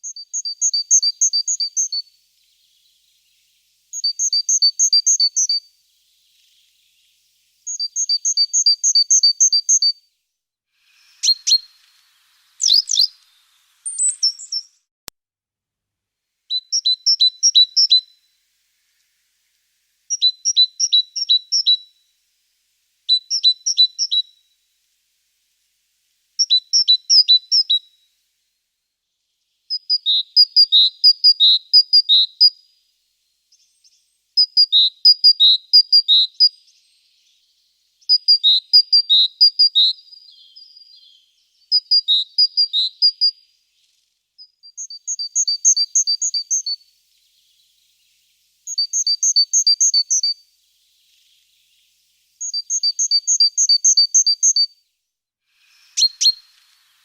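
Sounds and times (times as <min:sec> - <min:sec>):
songbird chirping: 0:00.0 - 0:14.9, 0:16.5 - 0:57.0.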